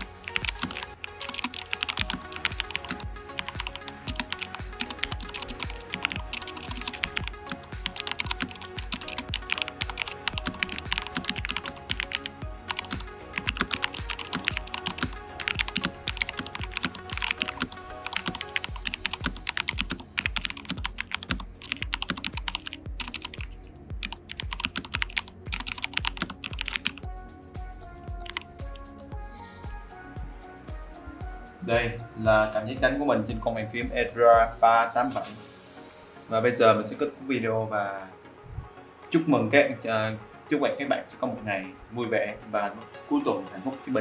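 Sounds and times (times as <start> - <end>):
mechanical keyboard typing: 0.0 - 27.0, 28.2 - 28.4
background music: 0.0 - 44.0.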